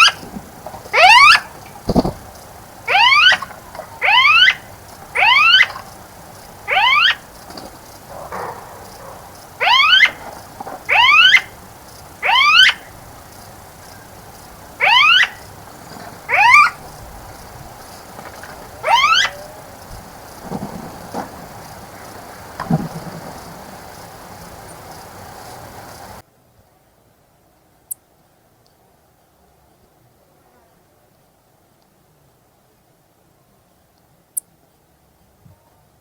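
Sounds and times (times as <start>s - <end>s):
bird rising call: 0.0s - 0.2s, 0.8s - 2.2s, 2.8s - 26.2s.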